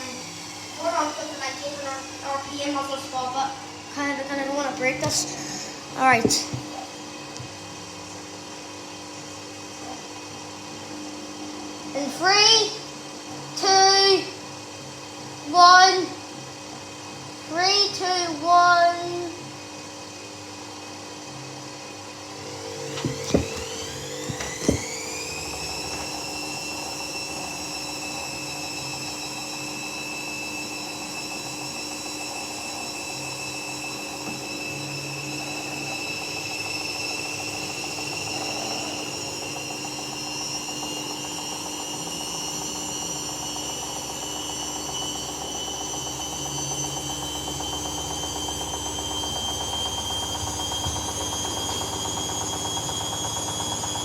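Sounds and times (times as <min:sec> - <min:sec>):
washing machine motor whine: 0:00.0 - 0:54.0
sharp knocks: 0:23.0 - 0:24.9.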